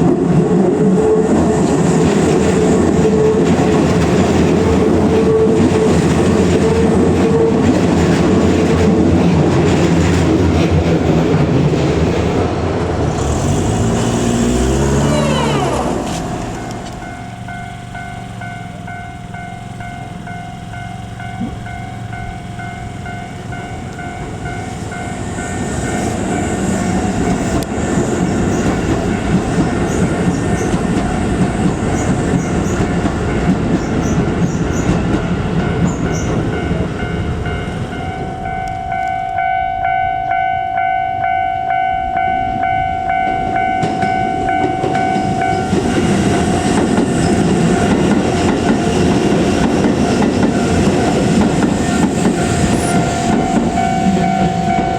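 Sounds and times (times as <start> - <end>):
train rumble and wheel clatter: 0.0 - 54.9
level-crossing alarm dinging: 15.4 - 27.6, 32.0 - 54.9
loud steady tone: 38.0 - 54.9.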